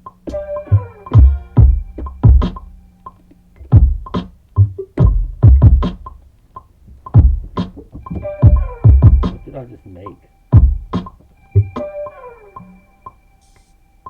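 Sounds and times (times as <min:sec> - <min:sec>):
drum-machine kicks: 0:00.0 - 0:02.9, 0:03.6 - 0:09.7, 0:10.5 - 0:11.9
synthesizer notes: 0:00.0 - 0:04.4, 0:07.0 - 0:14.0
sharp snare hits: 0:10.9 - 0:11.2.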